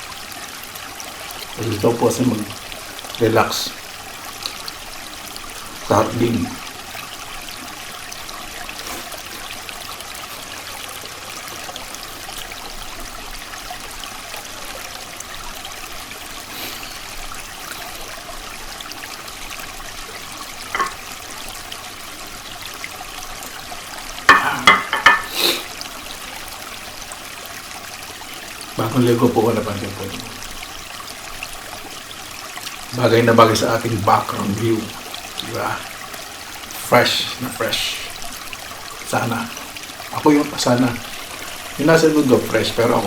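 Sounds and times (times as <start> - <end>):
creek water flowing: 0.0 - 43.0.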